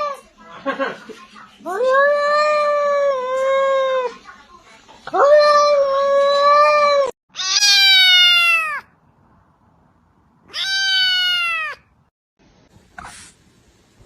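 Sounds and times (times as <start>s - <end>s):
cat meowing loudly: 7.3s - 8.9s, 10.5s - 11.9s.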